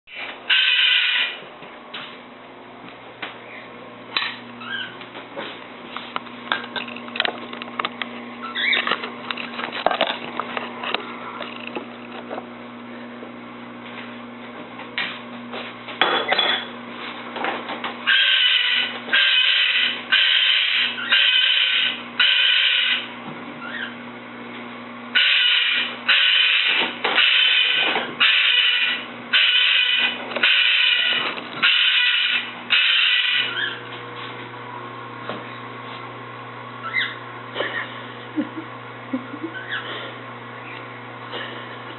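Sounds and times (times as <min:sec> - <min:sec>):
cockatoo screaming: 0:00.5 - 0:01.4, 0:18.1 - 0:24.0, 0:25.2 - 0:33.8.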